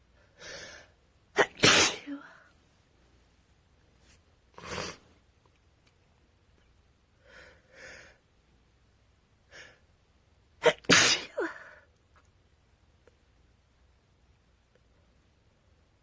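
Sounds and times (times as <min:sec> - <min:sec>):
woman sneezing: 0:01.4 - 0:02.3, 0:10.6 - 0:11.8.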